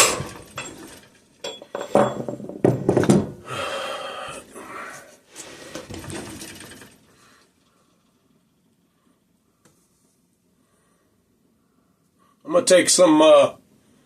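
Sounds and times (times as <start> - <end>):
metal scraping and rattling: 0.0 - 3.4, 5.3 - 7.4.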